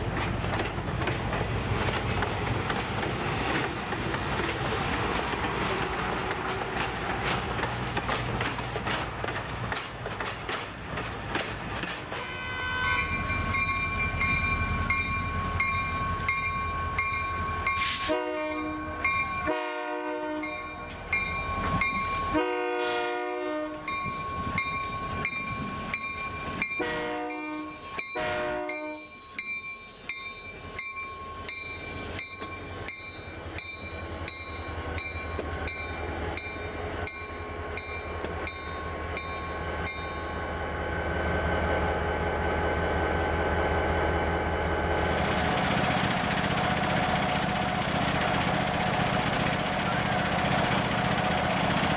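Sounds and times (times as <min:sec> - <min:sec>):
diesel locomotive engine rumble: 0:00.0 - 0:29.2, 0:29.9 - 0:51.9
train horn blasts: 0:12.1 - 0:13.2, 0:17.9 - 0:20.7, 0:22.3 - 0:23.9, 0:26.8 - 0:29.1.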